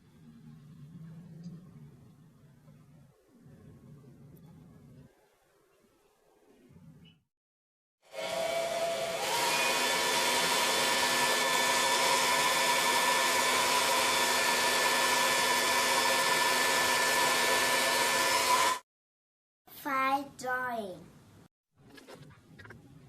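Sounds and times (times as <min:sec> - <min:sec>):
hair dryer blowing: 0:08.1 - 0:18.8.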